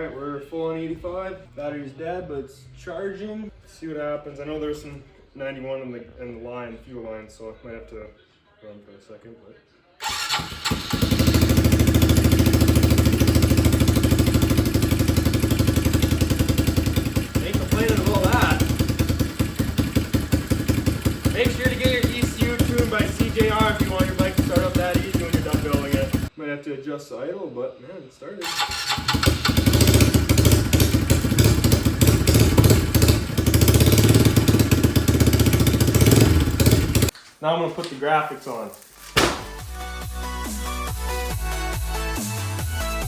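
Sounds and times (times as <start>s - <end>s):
motorcycle engine idling: 10.0s - 26.3s, 28.4s - 37.1s.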